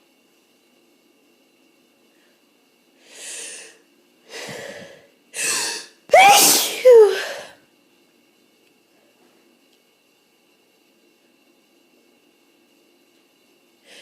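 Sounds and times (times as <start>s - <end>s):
person sneezing: 5.4s - 7.5s.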